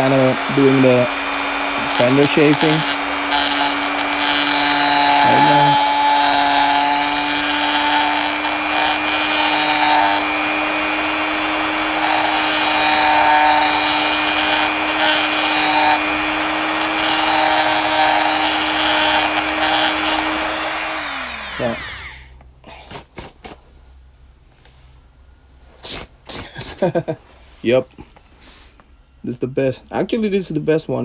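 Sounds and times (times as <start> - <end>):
rotary tool grinding metal: 0.0 - 22.2.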